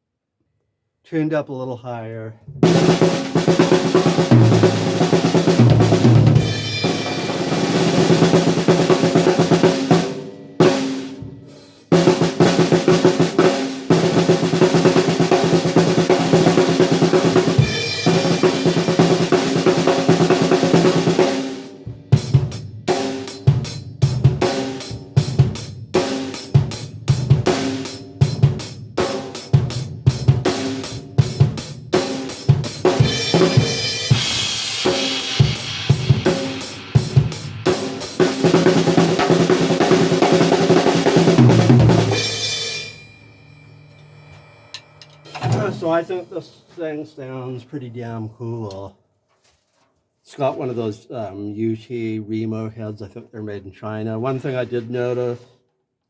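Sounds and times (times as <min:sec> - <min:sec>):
snare drum rolls and strokes: 0:02.6 - 0:23.6, 0:26.1 - 0:42.6.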